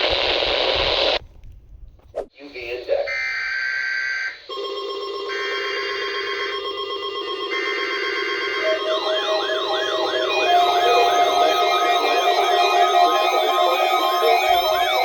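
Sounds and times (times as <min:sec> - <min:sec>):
steady warning alarm tone: 0:03.0 - 0:15.0
sweeping alert siren: 0:03.1 - 0:15.0
high pulsing receiver beep: 0:04.2 - 0:15.0.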